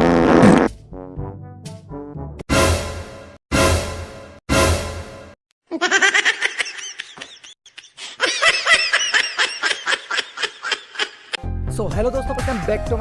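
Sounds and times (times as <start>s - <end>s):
brassy fart-like blast: 0.0s - 0.8s
high-pitched laughter: 5.7s - 11.4s.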